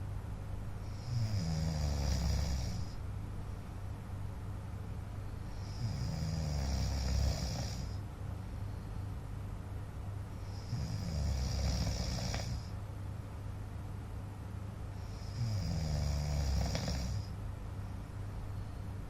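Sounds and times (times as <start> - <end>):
man snoring: 0.8 - 3.0, 5.5 - 8.0, 10.4 - 12.7, 15.0 - 17.3.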